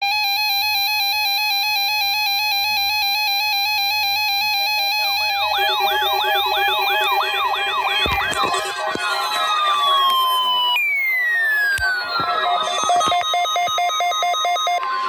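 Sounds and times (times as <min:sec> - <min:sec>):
buzzy alternating alarm tone: 0:05.0 - 0:14.8
rising siren-like whoops: 0:05.3 - 0:13.6.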